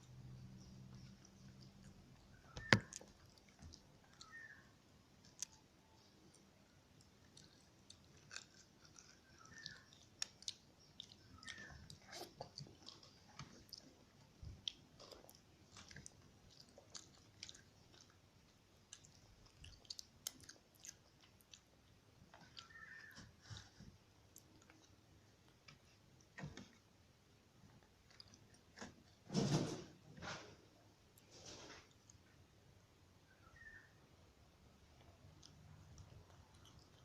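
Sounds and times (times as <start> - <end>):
chewing and biting food: 0.1 - 4.6, 6.3 - 25.1, 35.3 - 37.0.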